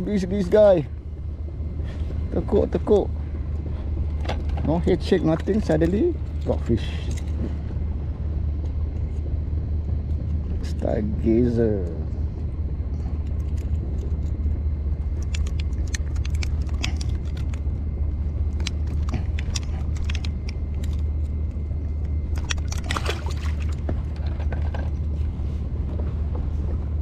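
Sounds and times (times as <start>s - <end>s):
wind rumble on microphone: 0.0s - 27.0s
light clicks and rattles: 3.6s - 7.6s, 13.0s - 26.9s
clatter: 13.0s - 17.8s, 18.4s - 25.2s.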